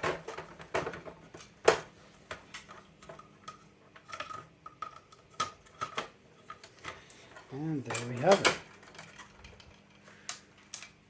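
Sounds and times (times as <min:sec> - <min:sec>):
plastic parts clicking and knocking: 0:00.0 - 0:11.0.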